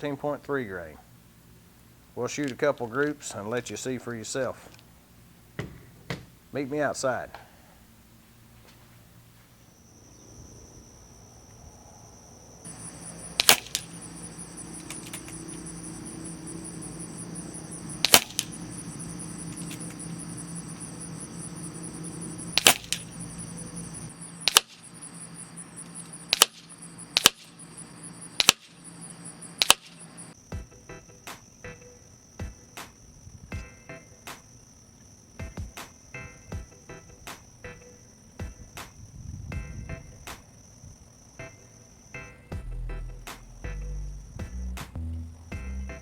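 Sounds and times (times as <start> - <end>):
insects chirping: 0.0 - 46.0
air pistol shots: 12.7 - 30.2.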